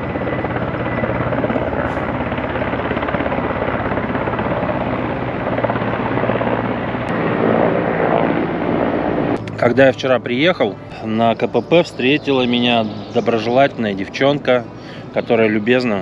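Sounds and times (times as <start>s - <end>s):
helicopter rotor blades beating: 0.0s - 16.0s.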